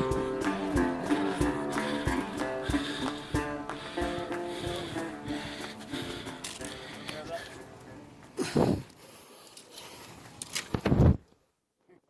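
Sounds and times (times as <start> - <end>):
person huffing breath: 0.0 - 7.6, 8.4 - 10.0.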